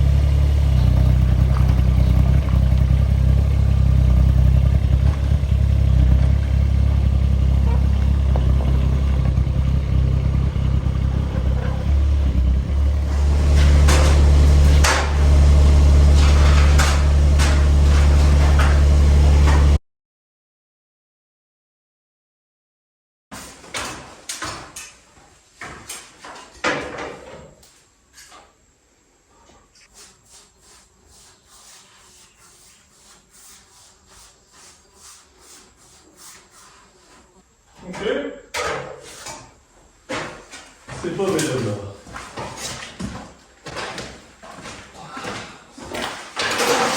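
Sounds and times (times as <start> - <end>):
engine humming: 0.0 - 19.8
faint scraping strokes: 29.8 - 37.4.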